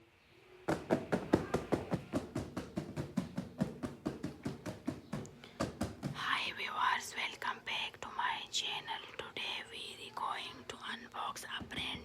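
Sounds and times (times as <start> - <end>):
rapid tapping on a box: 0.7 - 6.3.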